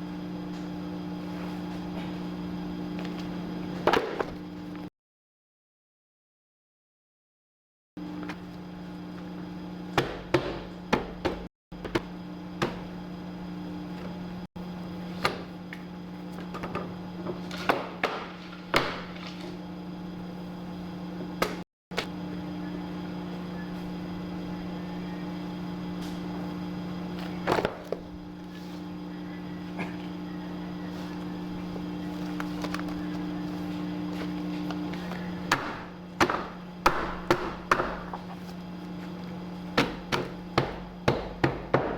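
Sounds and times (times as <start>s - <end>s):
guillotine motor hum: 0.0s - 4.9s, 8.0s - 41.9s
sharp knocks and slaps: 35.5s - 38.2s.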